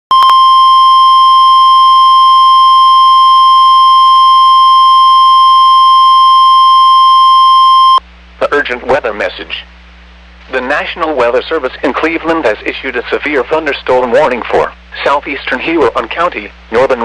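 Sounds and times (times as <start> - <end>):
steady alarm tone: 0.1 - 8.0.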